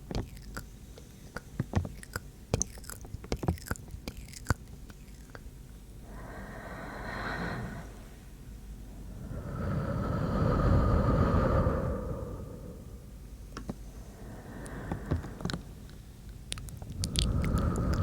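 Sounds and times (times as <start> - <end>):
soft mouth clicks: 0.0 - 5.5, 14.6 - 18.0
person breathing close to microphone: 6.0 - 18.0.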